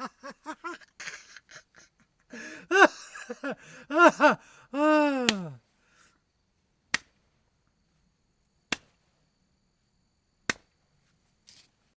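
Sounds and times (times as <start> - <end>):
hand slapping knee: 5.2 - 5.6, 6.9 - 7.3, 8.7 - 9.1, 10.4 - 10.8, 11.4 - 11.8.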